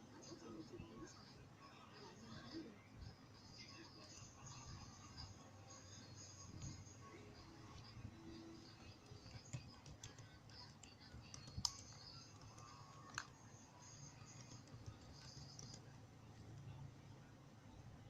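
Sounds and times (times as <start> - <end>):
faint clicks and ticks: 8.7 - 16.7.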